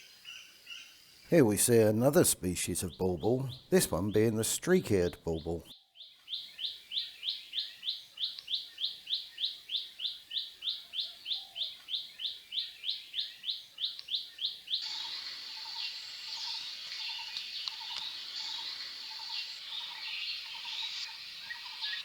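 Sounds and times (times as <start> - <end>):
dense high chorus: 1.3 - 5.7.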